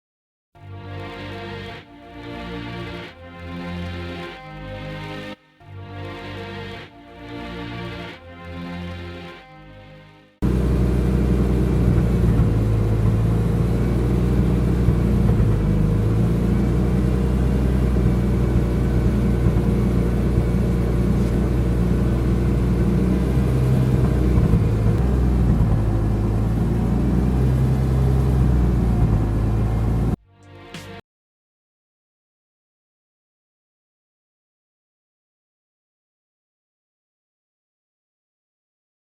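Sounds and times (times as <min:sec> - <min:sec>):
car engine running at low speed: 0:10.4 - 0:30.2.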